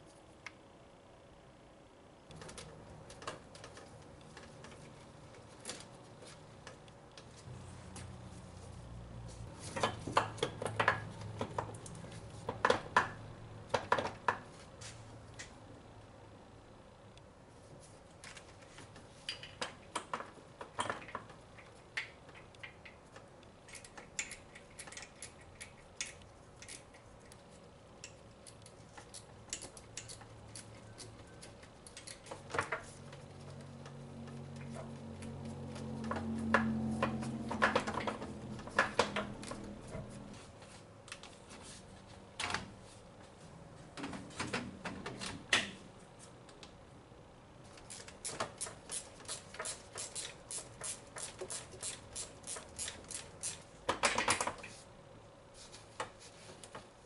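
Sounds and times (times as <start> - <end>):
low motor hum: 6.9 - 9.6, 33.0 - 40.4.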